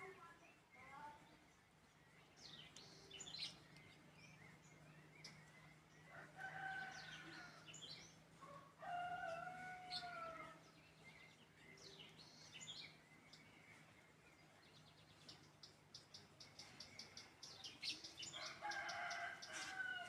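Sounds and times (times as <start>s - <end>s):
small birds chirping: 0.0s - 20.0s
rooster crowing: 6.1s - 7.7s, 8.4s - 10.6s, 18.3s - 20.0s.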